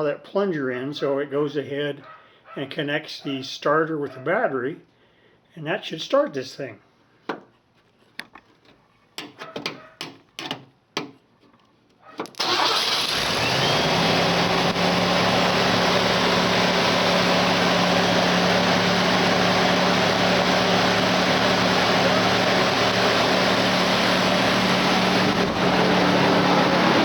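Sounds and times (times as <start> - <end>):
truck engine starting and idling: 12.4 - 27.0.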